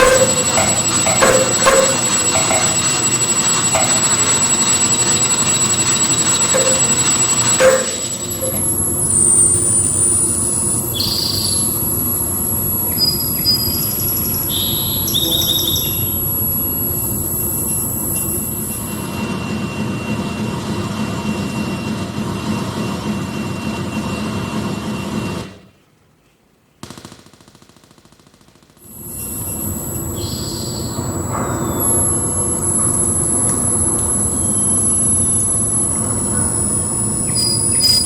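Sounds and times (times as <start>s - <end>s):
short electronic bleeps: 0.0s - 19.6s, 28.9s - 38.0s
high whistle shifting in pitch: 0.0s - 20.6s, 28.9s - 38.0s.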